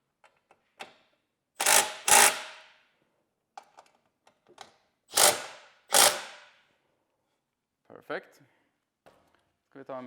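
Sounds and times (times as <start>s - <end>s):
cordless power driver bursts: 1.6s - 2.6s, 5.1s - 6.4s.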